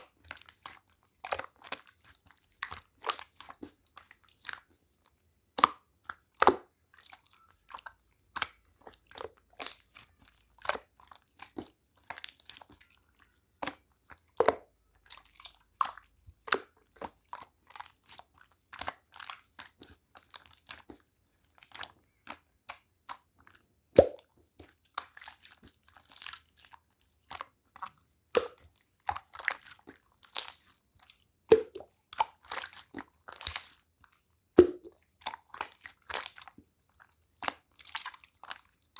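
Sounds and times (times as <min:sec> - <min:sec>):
sticky slime clicks and pops: 0:34.6 - 0:34.9.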